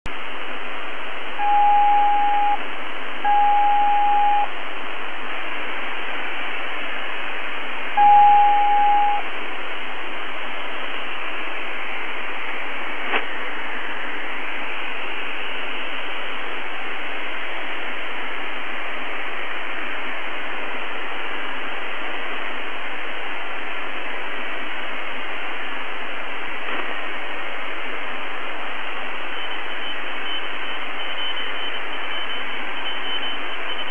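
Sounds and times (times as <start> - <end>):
shortwave radio hiss: 0.1 - 33.9
faint whistle changing pitch: 1.4 - 2.6, 3.3 - 4.5, 8.0 - 9.2
steady radio beeps: 1.4 - 2.6, 3.2 - 4.5, 8.0 - 9.3, 29.2 - 33.9
sharp clicks in static: 13.0 - 13.5, 26.6 - 27.0.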